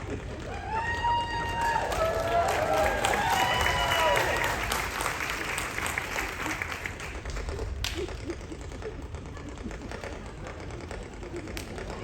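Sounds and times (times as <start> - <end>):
audience applause: 0.0 - 8.0.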